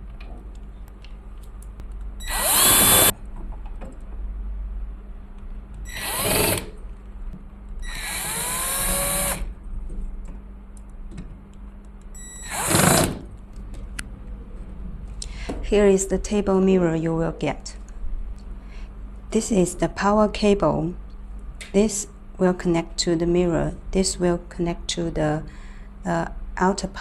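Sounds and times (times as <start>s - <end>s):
power screwdriver whine: 2.2s - 3.1s, 5.9s - 6.7s, 7.8s - 9.5s, 12.4s - 13.2s.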